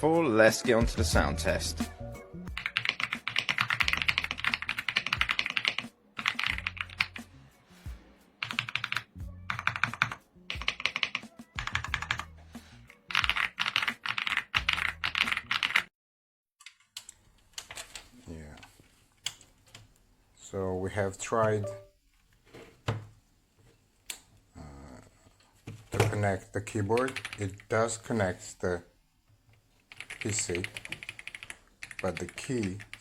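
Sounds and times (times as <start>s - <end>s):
mechanical keyboard typing: 2.6s - 7.2s, 8.4s - 12.3s, 13.1s - 15.9s, 26.9s - 27.6s, 29.9s - 33.0s.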